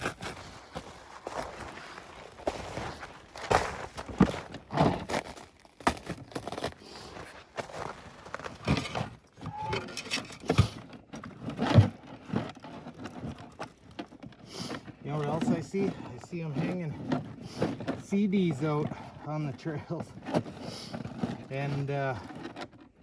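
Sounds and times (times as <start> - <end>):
footsteps crunching in snow: 0.0 - 9.0.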